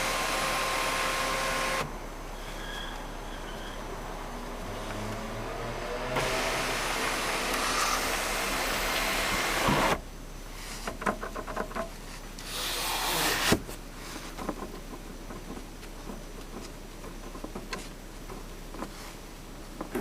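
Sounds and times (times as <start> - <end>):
car road noise: 0.0 - 20.0
sunroof creaking and rubbing: 6.2 - 10.0.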